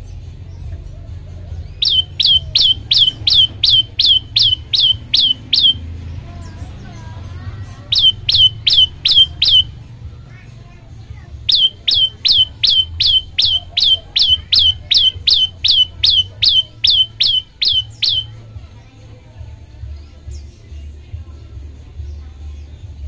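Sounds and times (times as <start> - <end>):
bird singing sharp high notes: 1.8 - 5.8, 7.9 - 9.8, 11.5 - 18.4.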